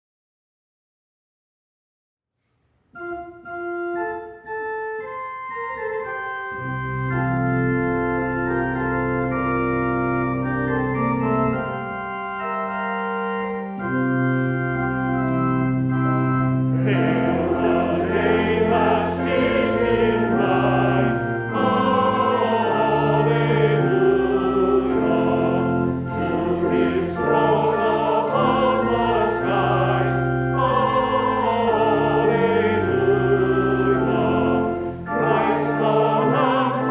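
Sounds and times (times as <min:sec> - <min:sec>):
church organ chords: 0:03.0 - 0:36.9
choir singing a hymn: 0:15.2 - 0:36.9.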